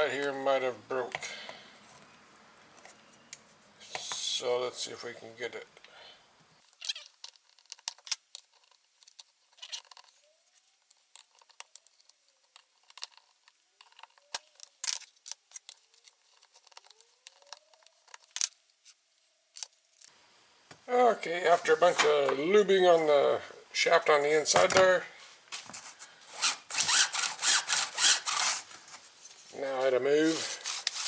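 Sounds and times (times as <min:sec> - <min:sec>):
faint short squeaks: 0:06.7 - 0:07.2.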